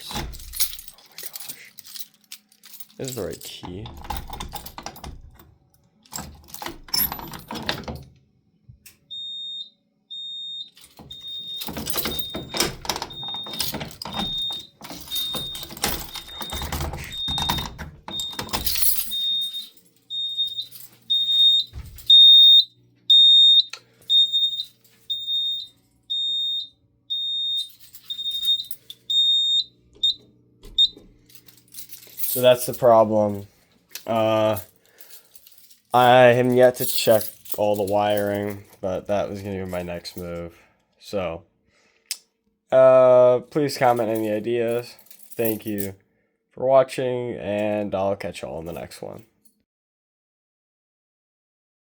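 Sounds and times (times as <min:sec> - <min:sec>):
key rattling: 0:00.0 - 0:08.1, 0:10.8 - 0:22.6, 0:23.2 - 0:40.4, 0:43.9 - 0:45.9
fire alarm beeping: 0:09.1 - 0:31.0.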